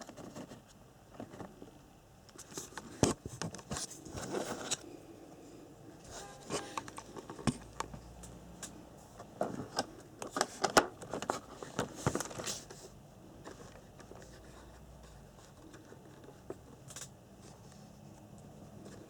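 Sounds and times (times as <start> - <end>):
packaging rustling and scraping: 2.4 - 4.9, 6.0 - 7.7, 9.3 - 17.7.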